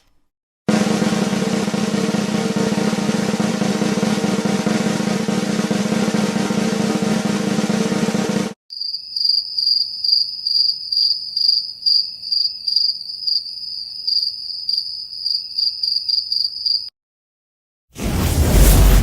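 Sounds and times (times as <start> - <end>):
crickets chirping: 8.7 - 16.9.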